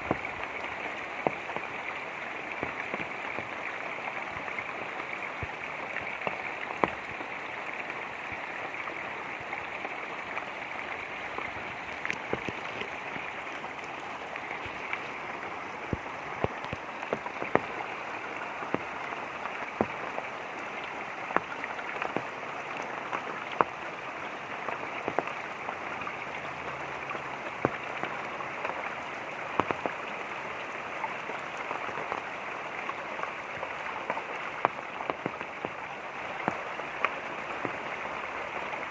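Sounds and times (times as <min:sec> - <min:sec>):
light rain falling: 0:00.0 - 0:38.9
running water rushing: 0:00.0 - 0:38.9
drops ticking: 0:10.6 - 0:20.2.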